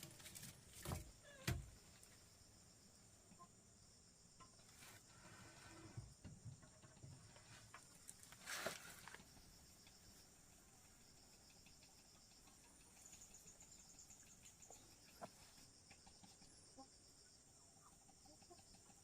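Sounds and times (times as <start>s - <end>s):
rustling: 7.2s - 9.5s.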